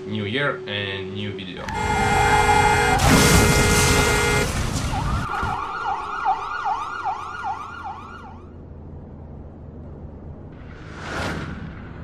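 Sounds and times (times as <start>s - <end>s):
siren wailing: 0.0s - 8.6s
loud noise: 1.6s - 5.2s.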